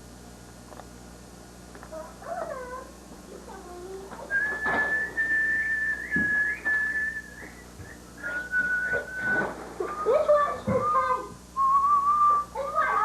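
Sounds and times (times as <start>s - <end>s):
person whistling held notes: 4.3s - 10.1s, 10.8s - 12.5s.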